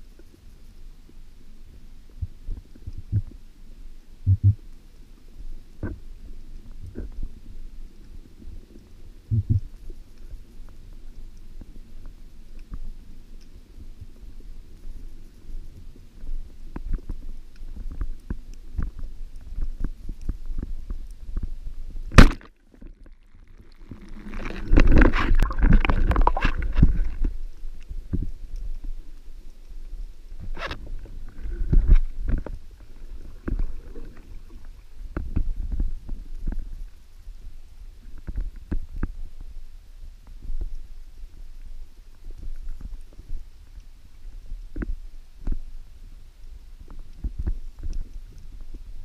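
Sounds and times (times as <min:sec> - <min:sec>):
small clicks and crackles: 0:00.0 - 0:49.0
low underwater rumble: 0:02.1 - 0:03.4, 0:04.3 - 0:04.8, 0:05.7 - 0:10.8, 0:13.8 - 0:39.6
sharp loud crack: 0:22.2 - 0:22.5.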